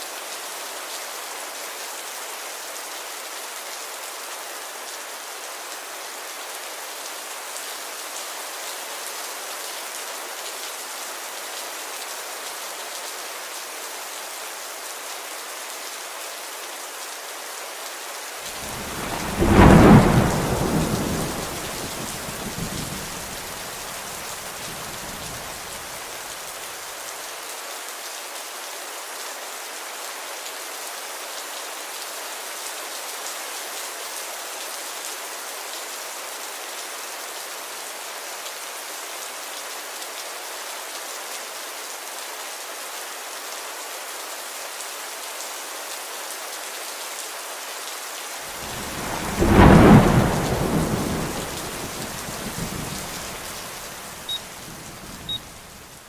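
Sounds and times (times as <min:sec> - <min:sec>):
steady rain: 0:00.0 - 0:56.0
thunderclap rumbling: 0:18.6 - 0:24.0, 0:24.6 - 0:25.9, 0:48.6 - 0:55.9.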